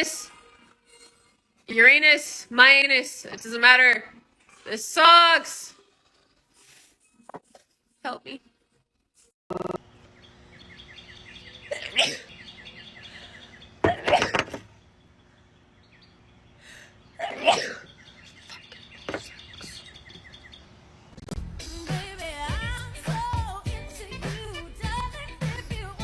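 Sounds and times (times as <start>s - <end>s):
bird chirping: 9.5s - 13.8s, 17.8s - 20.8s
woman sneezing: 17.2s - 17.8s.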